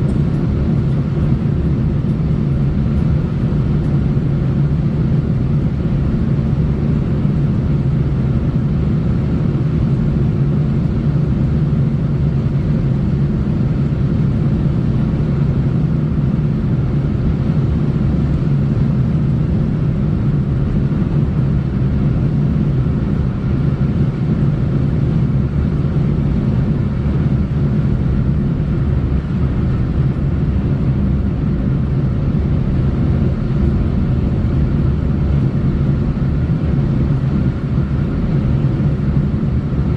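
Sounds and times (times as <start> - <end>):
vehicle driving on road: 0.0 - 39.9.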